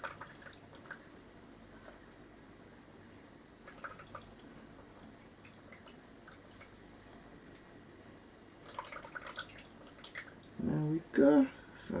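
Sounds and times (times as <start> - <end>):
faint liquid drips: 3.6 - 7.8, 8.5 - 11.6.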